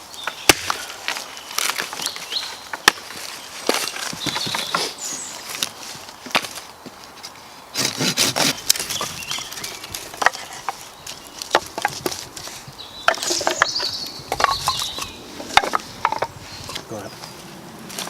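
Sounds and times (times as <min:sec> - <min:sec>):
firewood cracking and splintering: 0:00.0 - 0:06.6.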